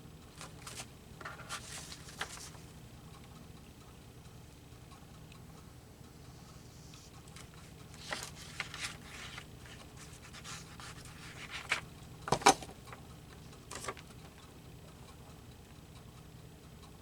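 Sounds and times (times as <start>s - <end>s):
paper rustling and scraping: 0.4s - 2.6s, 7.4s - 12.8s, 13.7s - 14.0s.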